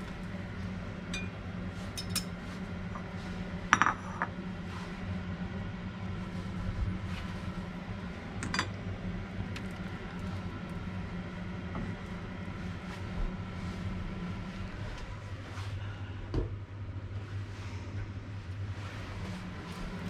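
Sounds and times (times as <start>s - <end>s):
steady low hum: 0.0s - 20.0s
utensil clinking on dish: 1.1s - 1.4s, 2.0s - 2.3s.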